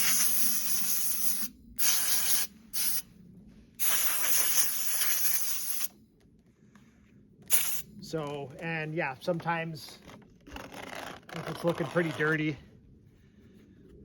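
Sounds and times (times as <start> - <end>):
compressed air blow gun hissing: 0.0 - 3.1, 3.8 - 5.9, 7.5 - 8.0.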